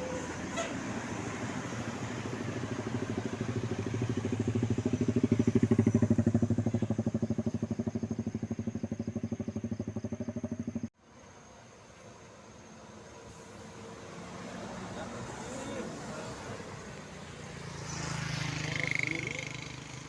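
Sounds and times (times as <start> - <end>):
vehicle engine passing by: 0.0 - 10.9, 13.2 - 20.0.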